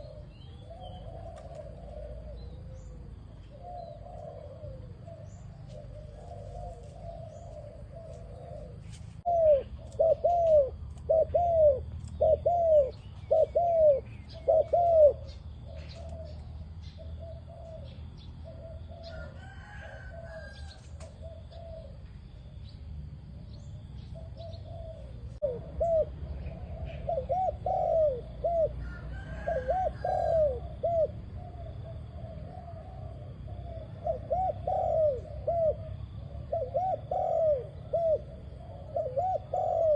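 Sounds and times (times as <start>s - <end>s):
dove cooing: 0.0s - 22.4s, 23.3s - 39.9s
small birds chirping: 0.0s - 29.0s.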